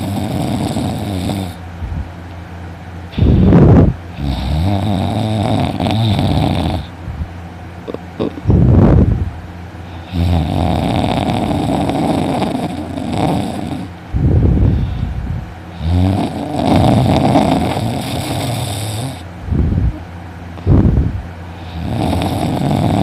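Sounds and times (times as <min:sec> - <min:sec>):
man snoring loudly: 0:00.0 - 0:01.6, 0:03.2 - 0:06.9, 0:10.0 - 0:14.0, 0:15.7 - 0:19.3, 0:21.6 - 0:23.0
loud breath: 0:03.1 - 0:03.9, 0:14.6 - 0:15.3.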